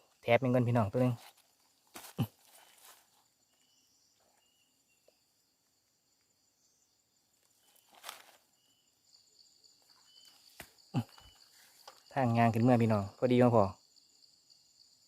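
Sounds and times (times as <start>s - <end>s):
insect chirps: 0.0s - 15.0s
insects trilling: 0.0s - 15.0s
brief rustle: 7.7s - 8.5s.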